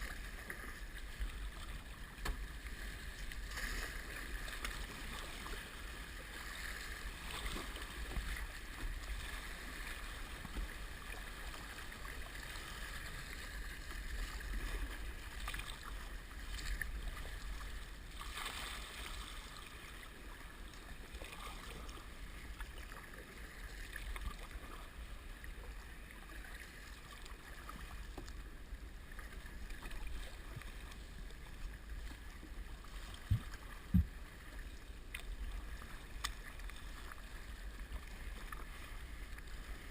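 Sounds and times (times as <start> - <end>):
water splashing and sloshing: 0.0 - 39.9
low thumps: 33.3 - 34.1
muffled low rumble: 33.3 - 34.3.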